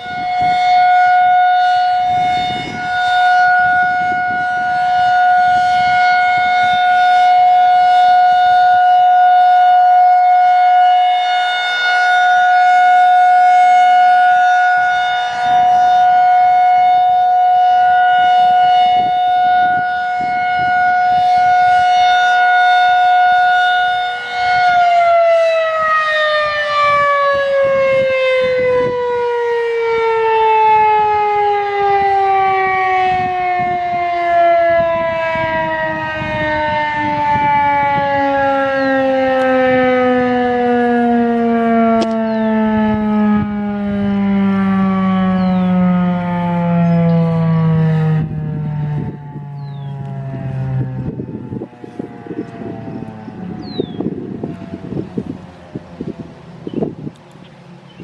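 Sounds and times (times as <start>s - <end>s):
siren winding down: 0.0s - 57.4s
warning siren steady tone: 0.0s - 58.0s.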